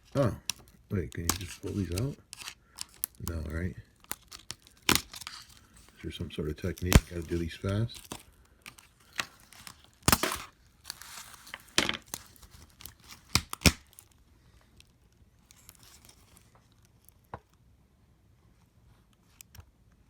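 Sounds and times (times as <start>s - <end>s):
plastic scraping: 0.0s - 13.7s
sharp plastic snaps: 12.0s - 14.2s.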